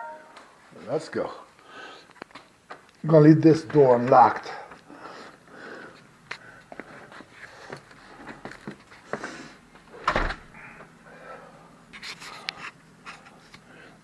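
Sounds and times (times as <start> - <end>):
door shutting with a thud: 10.0 - 10.5.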